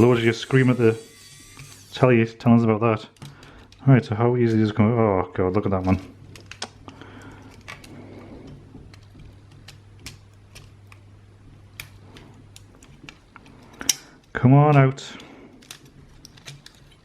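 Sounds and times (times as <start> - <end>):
plastic parts clicking and tapping: 5.5 - 11.1, 11.7 - 17.0.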